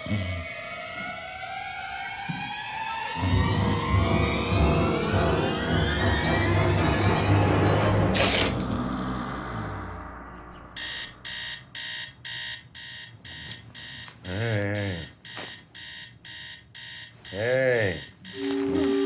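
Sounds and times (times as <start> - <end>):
alarm clock beeping: 10.8 - 19.0.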